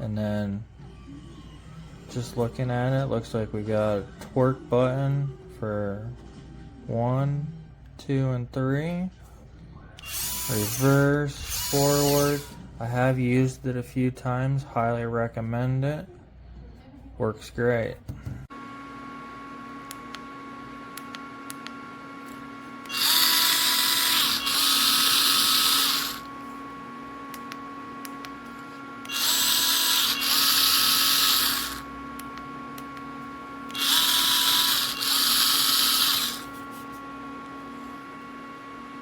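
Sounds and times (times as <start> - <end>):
cordless screwdriver whining: 10.0 - 12.6, 21.0 - 26.5, 27.3 - 36.9.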